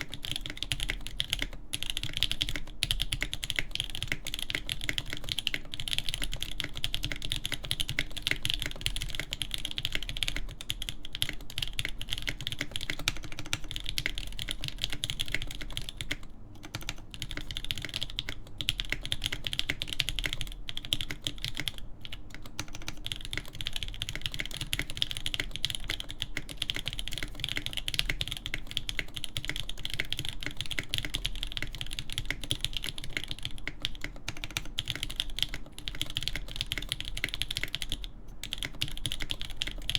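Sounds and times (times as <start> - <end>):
fast typing on mechanical keyboard: 0.0 - 39.9.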